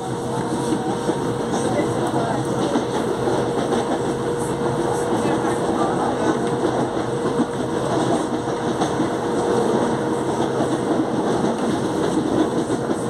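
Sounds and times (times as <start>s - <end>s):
wheel-on-rail rumble: 0.0s - 13.0s
track clicking: 0.2s - 13.0s.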